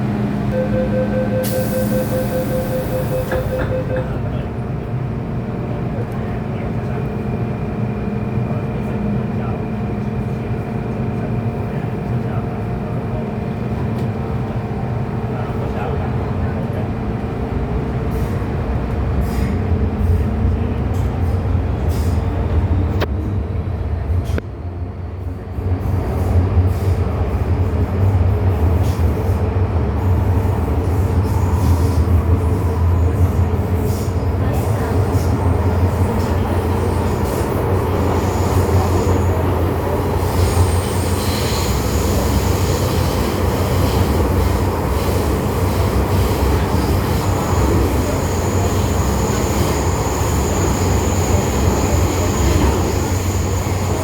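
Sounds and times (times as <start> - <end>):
train rumbling: 0.0 - 54.0.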